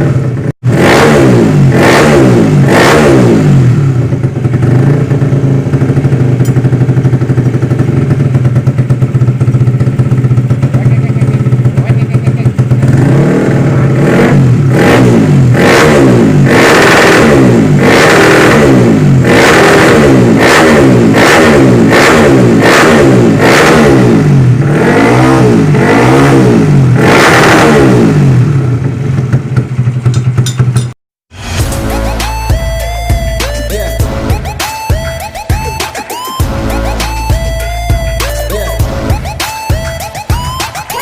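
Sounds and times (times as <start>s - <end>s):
motorcycle engine revving: 0.0s - 41.0s.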